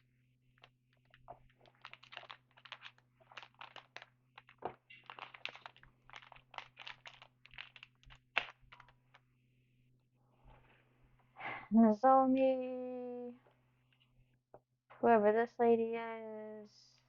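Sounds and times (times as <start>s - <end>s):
card wrapper crinkling: 0.6s - 9.2s
cards being flicked: 1.0s - 9.0s.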